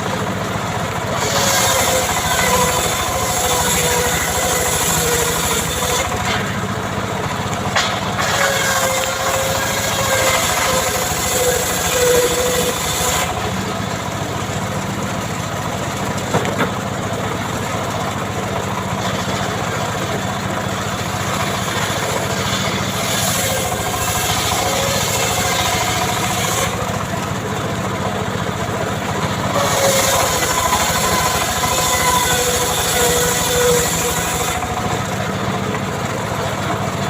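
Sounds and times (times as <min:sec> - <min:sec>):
chainsaw engine running: 0:00.0 - 0:37.0.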